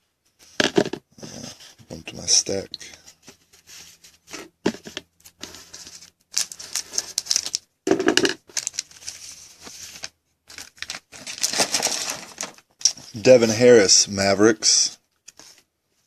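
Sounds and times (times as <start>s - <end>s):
cards shuffling: 3.2s - 13.0s
wrapper tearing and crinkling: 5.9s - 7.6s, 8.5s - 12.7s.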